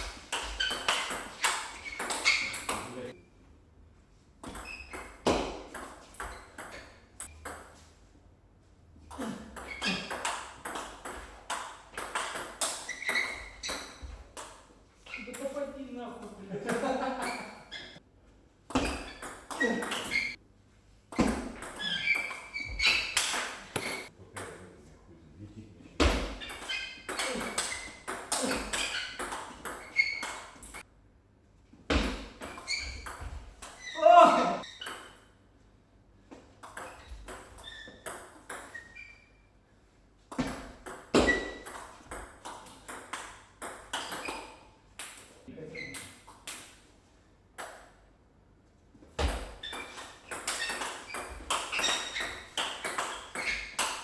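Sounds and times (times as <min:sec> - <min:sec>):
shoe squeaks: 0:00.0 - 0:03.2, 0:04.5 - 0:05.4, 0:06.0 - 0:07.3, 0:09.2 - 0:11.2, 0:12.0 - 0:14.3, 0:15.0 - 0:15.5, 0:17.2 - 0:18.0, 0:18.7 - 0:20.4, 0:21.2 - 0:24.1, 0:26.2 - 0:30.8, 0:32.2 - 0:35.3, 0:36.8 - 0:39.5, 0:41.2 - 0:41.8, 0:49.5 - 0:54.0.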